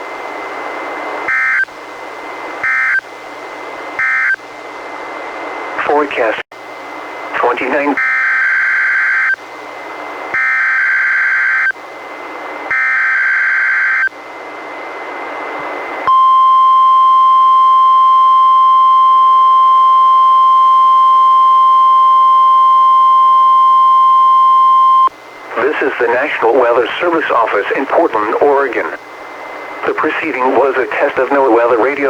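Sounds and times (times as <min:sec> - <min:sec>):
steady warning alarm tone: 0:01.2 - 0:01.8, 0:02.6 - 0:03.1, 0:04.0 - 0:04.4, 0:07.5 - 0:09.4, 0:10.3 - 0:11.8, 0:12.7 - 0:14.2, 0:16.0 - 0:28.7
radio static: 0:05.8 - 0:06.4, 0:07.3 - 0:08.2, 0:23.7 - 0:32.0.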